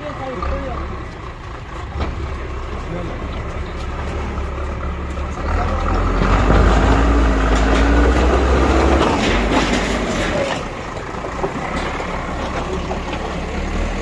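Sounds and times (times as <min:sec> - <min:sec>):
bulldozer diesel engine rumbling: 0:00.0 - 0:14.0
knocks and clatter: 0:05.1 - 0:14.0.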